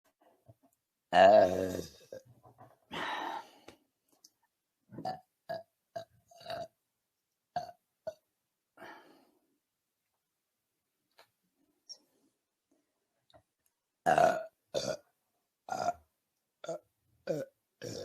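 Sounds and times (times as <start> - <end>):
woman belching: 1.2 - 2.2, 14.1 - 15.0, 15.7 - 16.0, 16.6 - 18.0.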